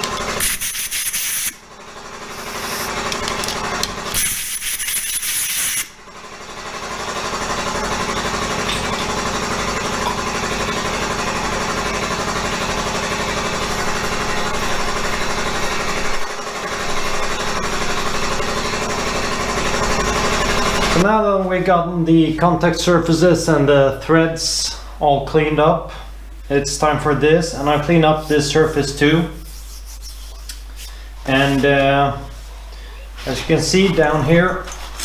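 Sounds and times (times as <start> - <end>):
handheld power tool humming: 0.0 - 1.6, 2.2 - 6.0.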